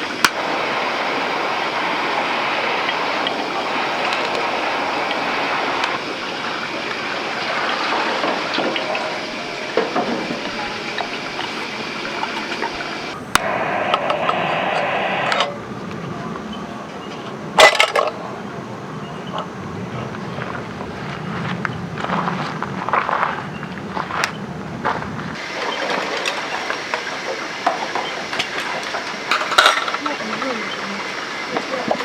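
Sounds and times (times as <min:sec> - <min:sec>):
heavy rain hiss: 0:00.0 - 0:16.3, 0:24.5 - 0:32.0.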